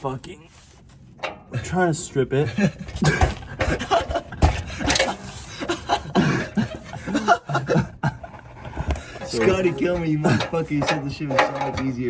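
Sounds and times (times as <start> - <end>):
men laughing: 2.3 - 10.9.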